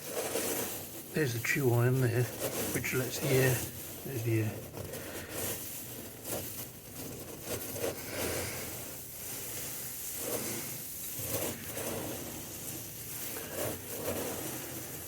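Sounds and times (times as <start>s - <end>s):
gritty scraping of coal: 0.0s - 15.0s.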